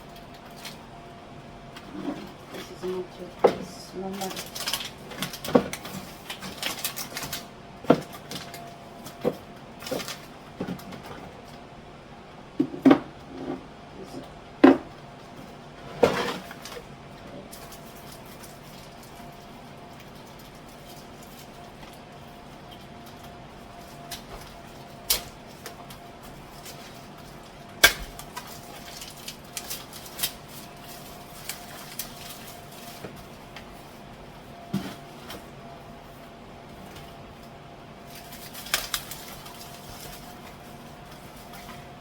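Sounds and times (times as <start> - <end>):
jars and bottles clattering on shelves: 1.8 - 11.4, 12.6 - 13.7, 15.8 - 16.8.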